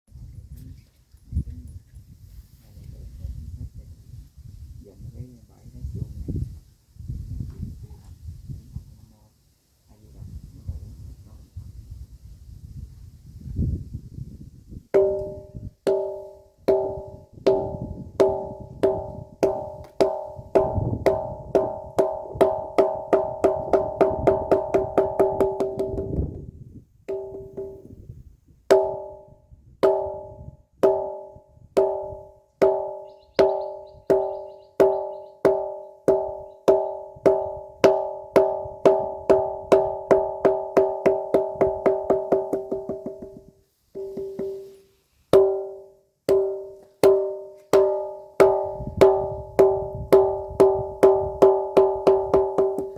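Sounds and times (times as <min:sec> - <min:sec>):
ringing rock struck: 0:15.0 - 0:26.4, 0:27.1 - 0:28.0, 0:28.7 - 0:52.9.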